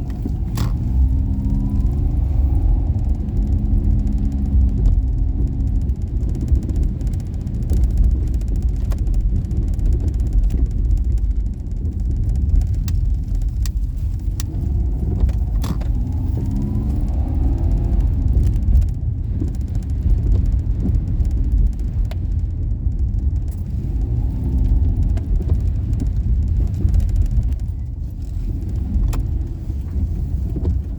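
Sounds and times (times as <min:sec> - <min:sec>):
car engine rumble: 0:00.0 - 0:30.9
road noise: 0:00.0 - 0:30.9.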